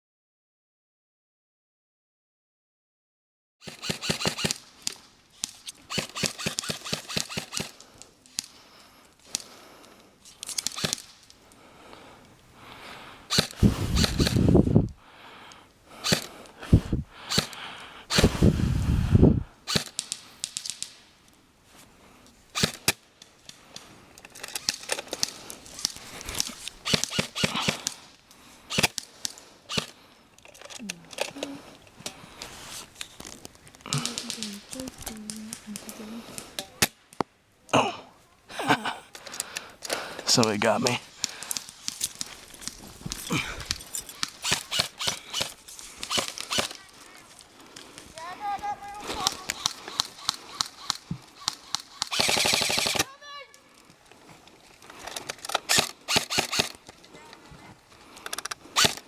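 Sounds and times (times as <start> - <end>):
airsoft guns firing bursts: 3.6 - 4.6, 5.9 - 7.8, 26.8 - 28.0, 44.2 - 46.8, 49.0 - 53.1, 55.6 - 56.8, 58.6 - 59.0.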